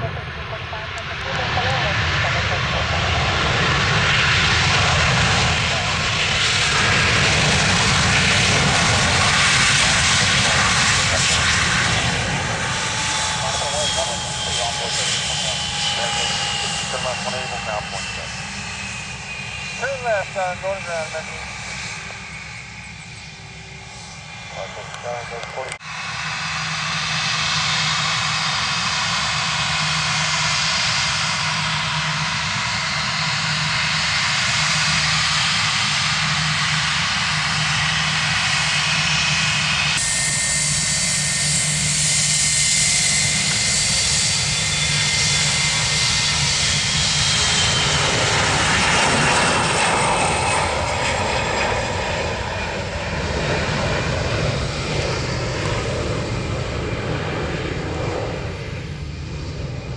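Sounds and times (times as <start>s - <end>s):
jet engines roaring with whine: 0.0s - 59.9s.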